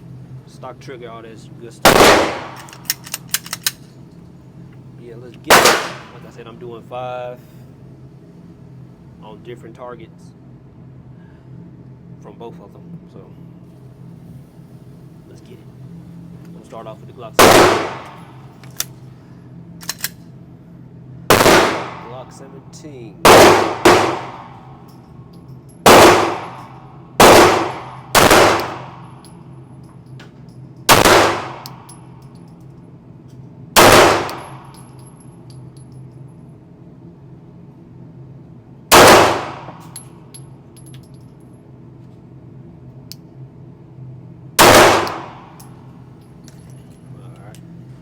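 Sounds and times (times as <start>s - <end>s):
pistol shots: 1.9s - 3.7s, 5.5s - 6.2s, 17.4s - 18.4s, 21.3s - 22.2s, 23.2s - 24.7s, 25.8s - 29.2s, 30.9s - 31.9s, 33.8s - 34.7s, 38.9s - 39.8s, 44.6s - 45.6s.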